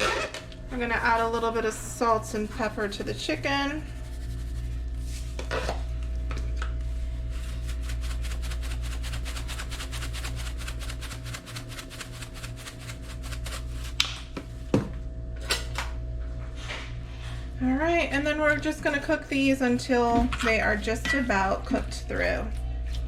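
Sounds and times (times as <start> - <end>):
low hum: 0.0 - 23.0.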